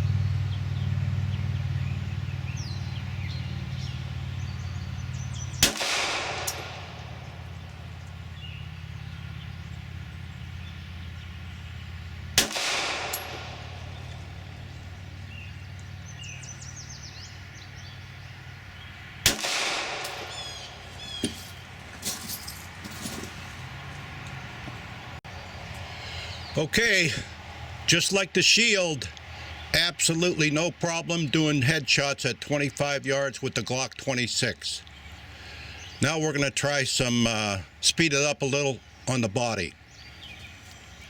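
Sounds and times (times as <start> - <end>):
pistol shots with echo: 5.6 - 8.0, 12.3 - 14.7, 19.2 - 21.4.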